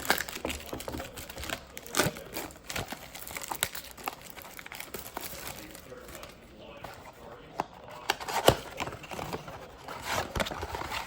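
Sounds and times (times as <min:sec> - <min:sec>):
plastic wrapping crinkling and tearing: 0:00.0 - 0:06.3.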